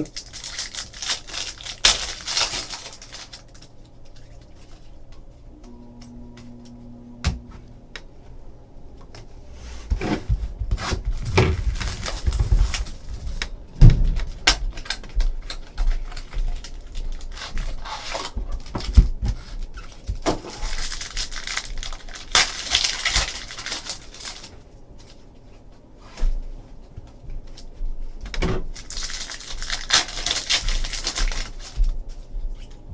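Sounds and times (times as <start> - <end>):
pack wrapper crinkling: 0.0 - 4.8, 11.6 - 13.5, 14.2 - 24.5, 28.8 - 31.8.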